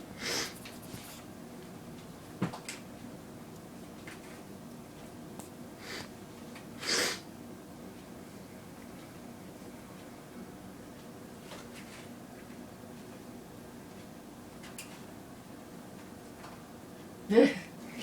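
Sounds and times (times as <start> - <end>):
sharp nasal exhales: 6.8 - 7.2.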